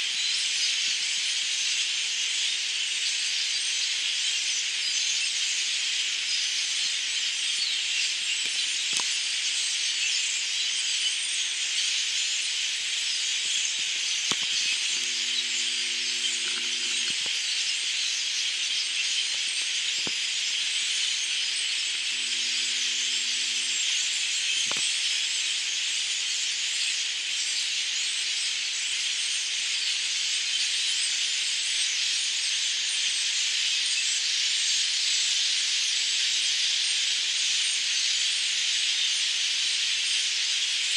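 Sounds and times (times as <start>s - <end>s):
flock of birds chattering: 3.8s - 27.9s.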